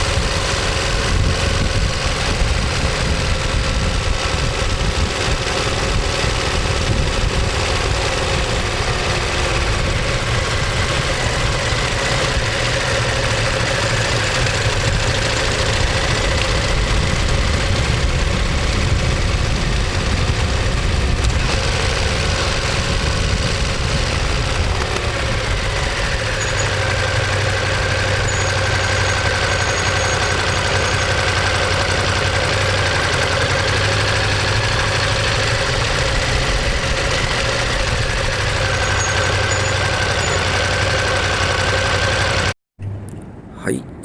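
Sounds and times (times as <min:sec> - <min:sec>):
motorcycle engine running steadily: 0:00.0 - 0:43.3.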